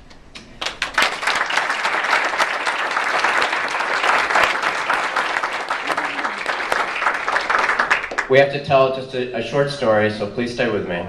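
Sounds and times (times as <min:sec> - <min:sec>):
audience applauding: 0:00.6 - 0:08.4.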